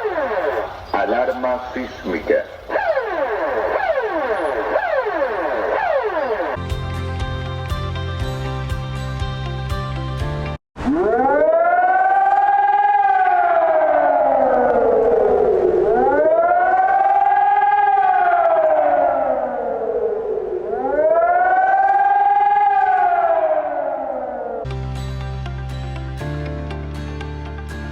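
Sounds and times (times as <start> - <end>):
siren wailing: 0.0 - 6.6, 10.8 - 24.7.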